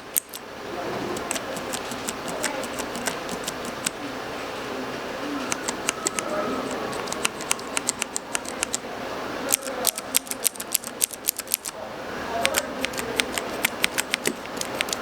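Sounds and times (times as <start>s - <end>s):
keyboard switches clicking: 0.0s - 0.4s, 1.1s - 4.0s, 5.5s - 8.9s, 9.5s - 11.7s, 12.4s - 15.0s.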